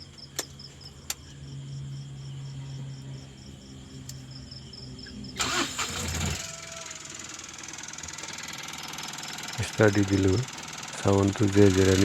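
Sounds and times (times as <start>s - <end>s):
insect chirping: 0.0s - 12.0s.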